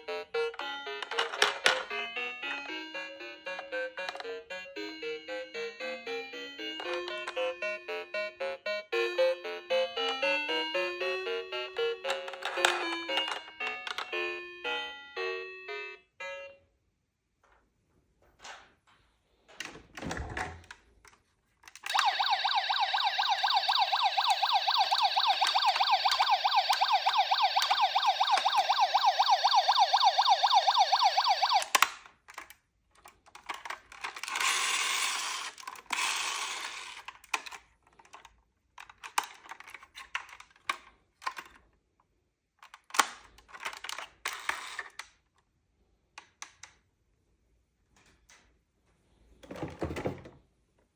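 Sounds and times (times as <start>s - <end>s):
toy electronic siren warbling: 21.9s - 31.8s.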